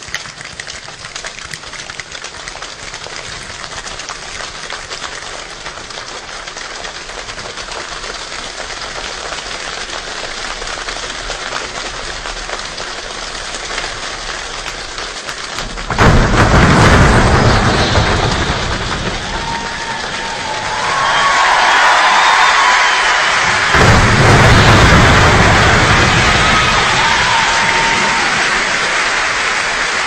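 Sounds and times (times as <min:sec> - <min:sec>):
hands patting imitating rain: 0:00.0 - 0:16.9.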